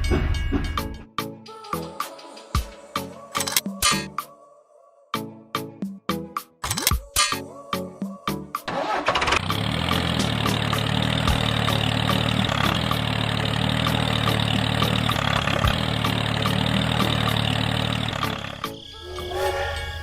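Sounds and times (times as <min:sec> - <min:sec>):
ticking engine clatter: 0:08.7 - 0:18.8
tractor engine idling: 0:08.7 - 0:18.9.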